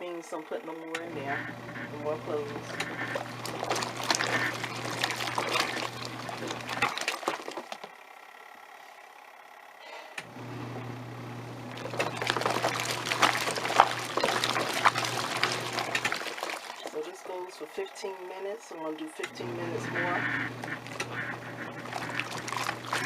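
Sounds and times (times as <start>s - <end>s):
washing machine motor hum: 0.0s - 23.0s
water sloshing: 1.0s - 8.0s, 11.7s - 17.8s, 19.3s - 23.0s.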